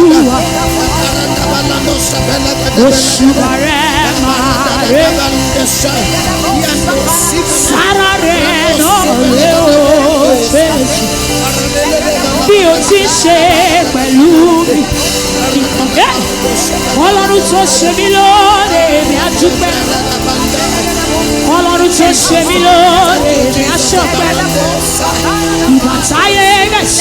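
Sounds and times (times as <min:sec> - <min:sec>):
congregation singing and praying: 0:00.0 - 0:27.0
sustained instrumental chords: 0:00.0 - 0:27.0.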